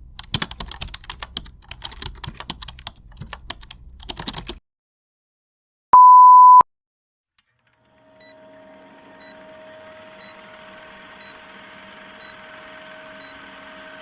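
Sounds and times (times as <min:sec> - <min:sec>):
short high beeps: 0:06.0 - 0:06.6
electronic hum with mid-pitched tone: 0:09.2 - 0:14.0.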